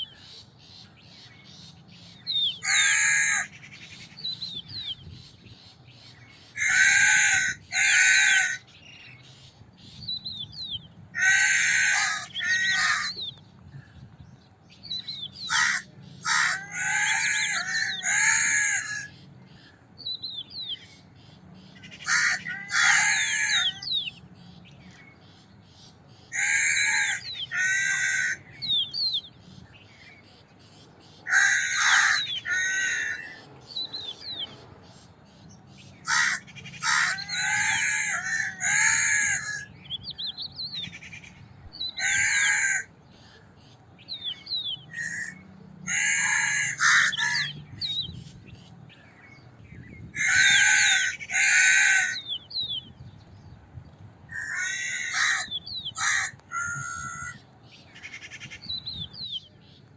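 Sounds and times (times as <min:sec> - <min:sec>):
small birds chirping: 0:00.0 - 0:59.9
crows cawing: 0:02.6 - 0:04.2, 0:06.3 - 0:09.0, 0:11.2 - 0:13.2, 0:15.4 - 0:19.9, 0:21.6 - 0:24.0, 0:26.3 - 0:28.9, 0:31.2 - 0:34.0, 0:35.9 - 0:39.9, 0:40.8 - 0:43.5, 0:44.9 - 0:47.6, 0:50.1 - 0:52.5, 0:54.3 - 0:57.4.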